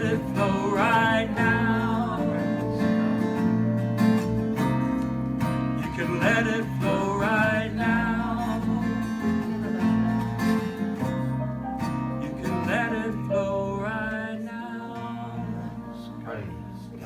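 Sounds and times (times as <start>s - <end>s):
man singing: 0.0s - 3.4s, 5.8s - 10.0s, 12.2s - 16.7s
acoustic guitar chords: 0.0s - 17.0s.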